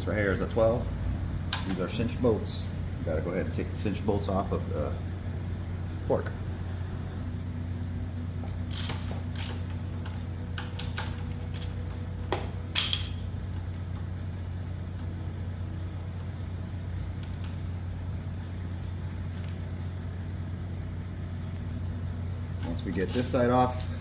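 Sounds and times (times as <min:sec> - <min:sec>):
steady low hum: 0:00.0 - 0:24.0
metallic clicks of hand tools: 0:10.6 - 0:13.2.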